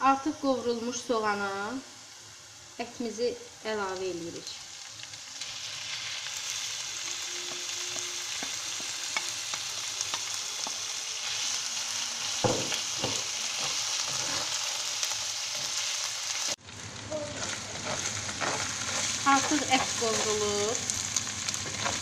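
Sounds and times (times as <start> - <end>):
meat sizzling in a frying pan: 0.0 - 22.0.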